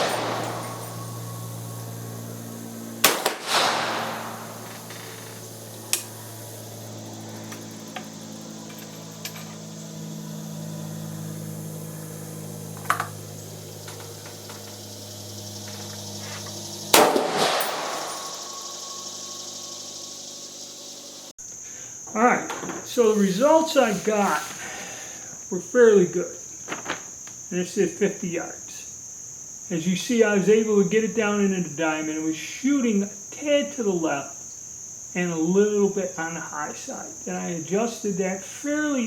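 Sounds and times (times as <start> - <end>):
rifle shots with echo: 0.0 - 5.2, 16.9 - 19.1
steady low hum: 0.0 - 21.3
faint sharp cracks: 3.0 - 6.2.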